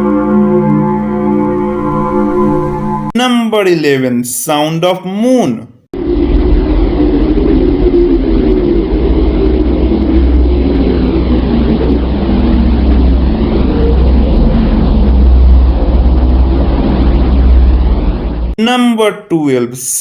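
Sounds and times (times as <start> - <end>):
deep droning hum with hiss: 6.0 - 18.6.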